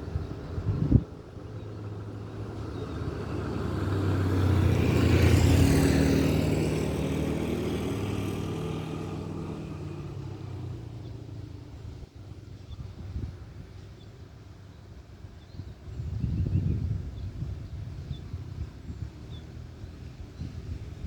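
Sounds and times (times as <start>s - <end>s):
vehicle passing by: 0.0s - 12.3s, 16.8s - 21.0s.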